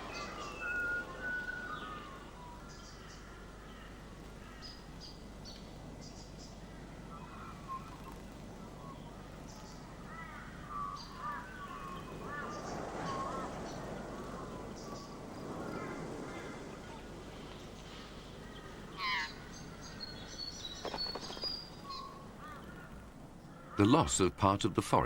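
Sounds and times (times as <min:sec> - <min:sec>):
birds calling: 0:00.0 - 0:25.0
background hiss: 0:09.3 - 0:25.0.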